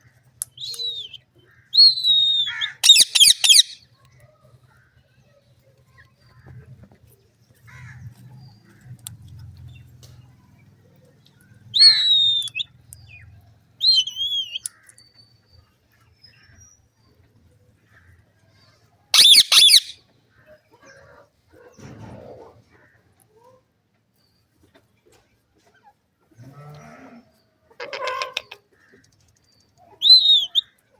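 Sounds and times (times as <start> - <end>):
parrots calling: 1.8 - 3.8, 11.8 - 12.6, 19.2 - 20.0, 30.0 - 30.6
harsh parrot screech: 2.0 - 3.8, 19.2 - 20.0.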